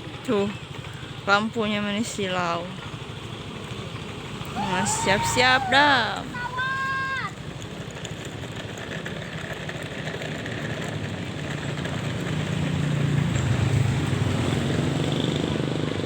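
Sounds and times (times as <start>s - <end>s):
airliner engines rumbling: 3.6s - 7.6s.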